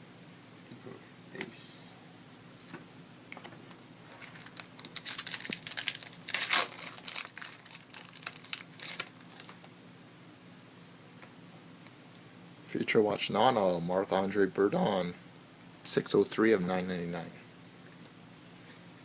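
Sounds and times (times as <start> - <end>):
crinkly packaging crackling: 4.1 - 9.7.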